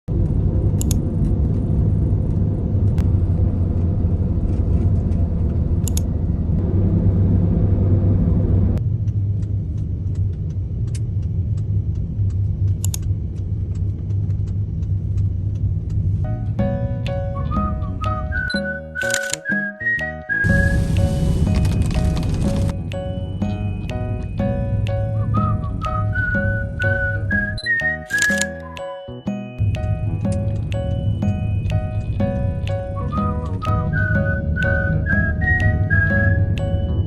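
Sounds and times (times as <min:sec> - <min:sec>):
engine rumbling: 0:00.1 - 0:19.1, 0:20.3 - 0:37.0
high hiss: 0:20.5 - 0:22.7.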